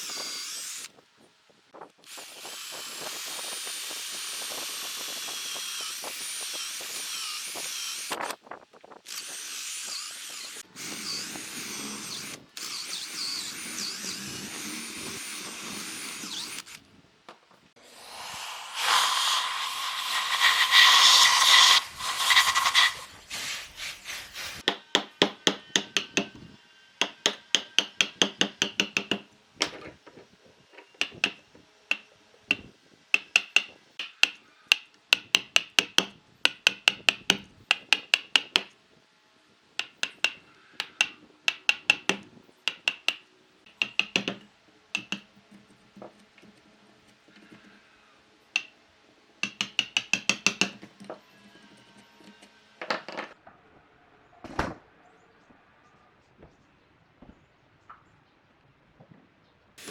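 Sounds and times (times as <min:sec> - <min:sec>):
hammer striking chisel: 0:24.6 - 0:26.4, 0:27.0 - 0:29.8, 0:30.9 - 0:38.7, 0:39.8 - 0:45.4, 0:49.4 - 0:51.2.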